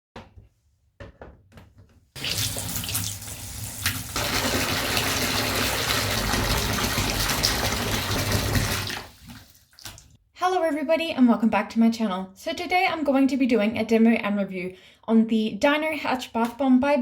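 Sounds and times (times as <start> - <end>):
water pouring into bathtub: 2.2 - 10.2.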